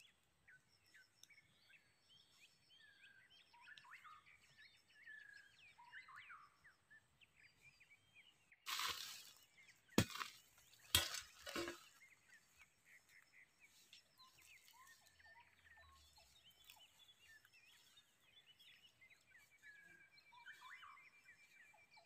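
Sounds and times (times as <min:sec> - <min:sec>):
bird calls and chirps: 0:00.0 - 0:22.0.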